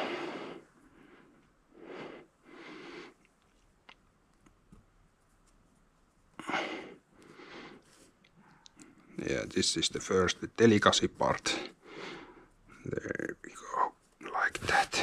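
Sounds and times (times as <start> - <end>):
person breathing: 0.0 - 3.2, 6.4 - 8.8, 11.5 - 12.6.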